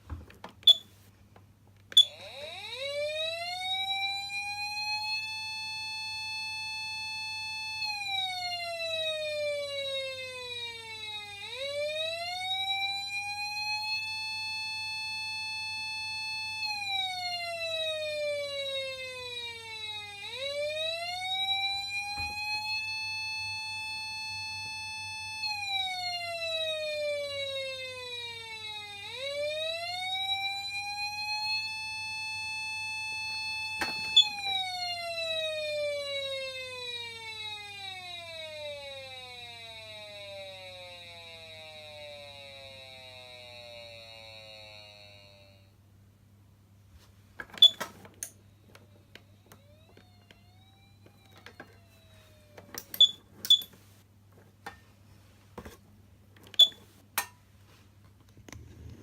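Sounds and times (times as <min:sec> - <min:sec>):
electronic siren wailing: 0:02.0 - 0:45.8, 0:48.6 - 0:53.8, 0:56.5 - 0:57.3.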